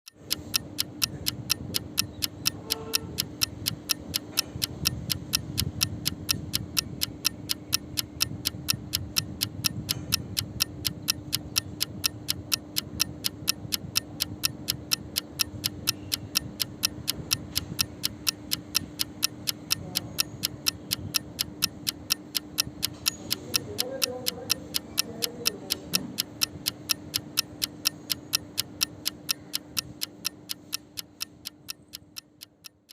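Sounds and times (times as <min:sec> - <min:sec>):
sharp evenly spaced clicks: 0:00.1 - 0:32.9
steady low hum: 0:00.1 - 0:32.9.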